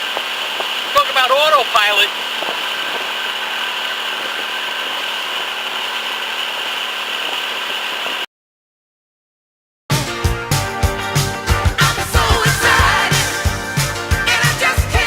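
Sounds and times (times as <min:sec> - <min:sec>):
boat engine running: 0:00.0 - 0:08.2.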